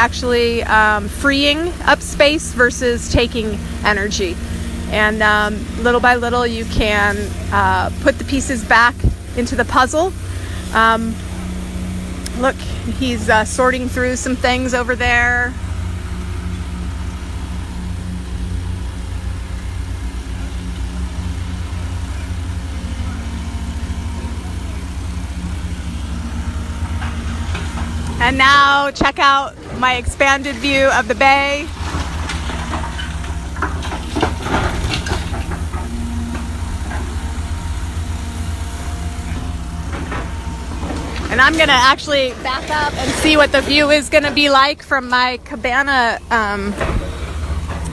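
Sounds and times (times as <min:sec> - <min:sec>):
machinery engine humming: 0:00.0 - 0:47.9
debris knocking and clattering: 0:26.8 - 0:37.2.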